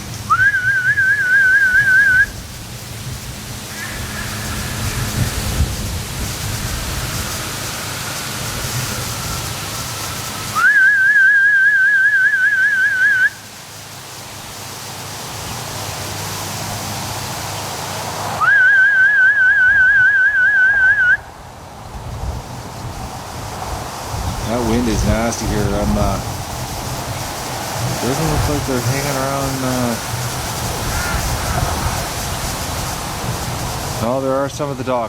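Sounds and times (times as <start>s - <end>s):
wind gusts on microphone: 0.0s - 13.2s, 14.3s - 34.8s
duck call whistle warbling: 0.3s - 2.4s, 10.5s - 13.4s, 18.4s - 21.3s.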